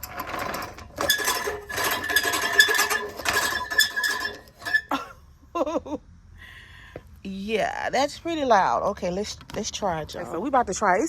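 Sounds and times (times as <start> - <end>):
lawn mower reel clattering: 0.0 - 5.0.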